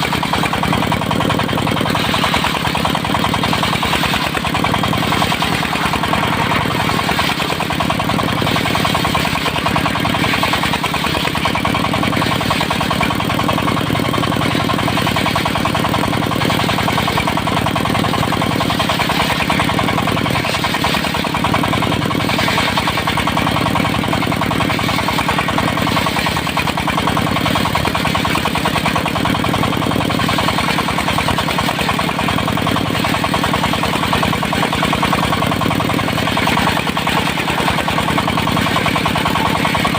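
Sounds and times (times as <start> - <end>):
diesel engine chugging: 0.0 - 39.9.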